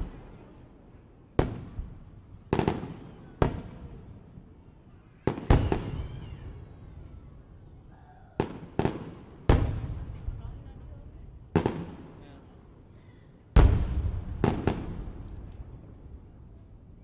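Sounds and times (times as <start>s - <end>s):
fireworks booming with echo: 1.4s - 4.4s, 5.2s - 7.1s, 8.4s - 12.5s, 13.6s - 17.0s.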